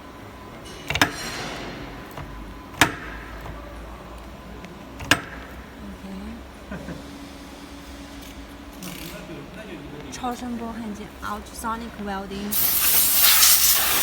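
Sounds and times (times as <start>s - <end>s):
pneumatic cylinder clacks: 12.5s - 14.0s
short air hiss: 12.5s - 14.0s.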